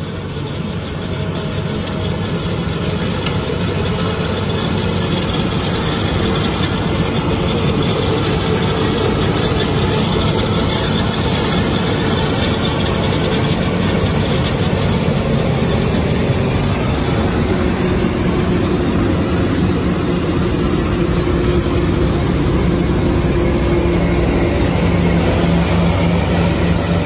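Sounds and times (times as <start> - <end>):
harvester engine droning: 0.0 - 27.0.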